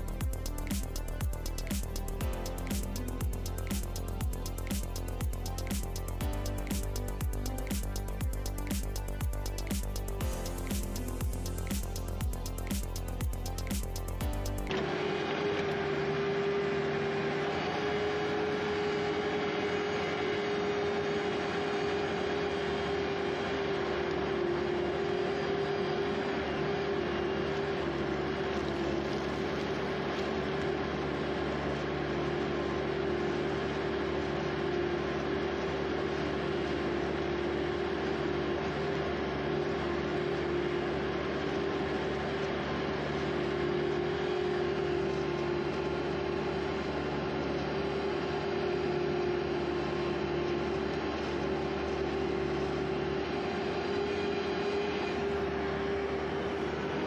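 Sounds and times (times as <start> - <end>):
skid steer engine running: 0.0 - 57.0.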